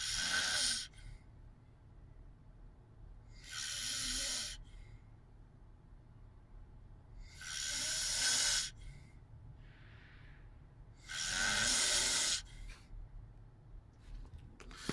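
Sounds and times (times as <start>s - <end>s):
person snoring loudly: 0.0s - 0.9s, 3.4s - 4.6s, 7.4s - 8.7s, 11.1s - 12.4s
quiet breath: 0.0s - 1.9s, 3.2s - 5.3s, 7.1s - 13.2s.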